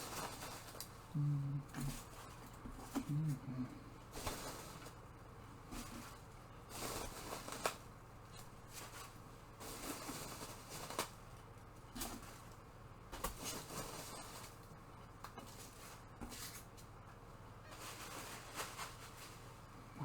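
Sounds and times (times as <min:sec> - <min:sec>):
packing material rustling: 0:00.0 - 0:01.0, 0:04.0 - 0:12.6, 0:17.8 - 0:19.7
faint low hum: 0:00.0 - 0:20.0.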